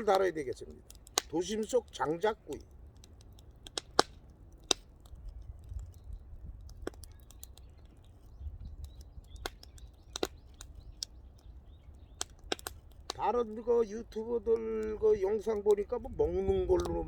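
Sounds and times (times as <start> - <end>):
wood fire popping and cracking: 0.0 - 17.0.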